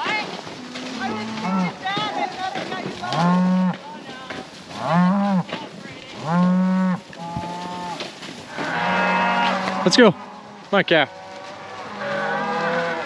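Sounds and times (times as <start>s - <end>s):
cattle bawling: 6.1s - 13.0s.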